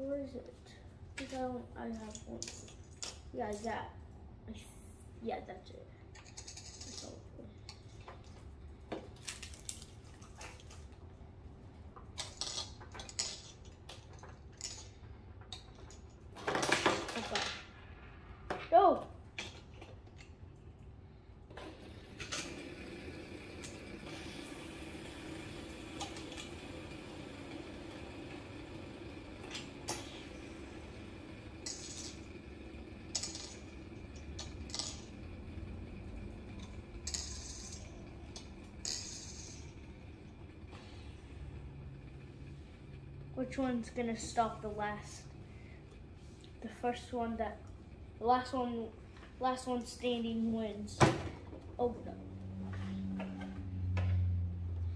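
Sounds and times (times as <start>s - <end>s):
low steady hum: 0.0s - 54.9s
fidget toys clicking and clattering: 1.2s - 3.8s, 6.1s - 11.1s, 12.0s - 17.9s, 31.4s - 40.0s
fidget toys clinking: 6.1s - 8.1s, 31.6s - 32.4s, 33.0s - 35.4s, 36.3s - 40.0s.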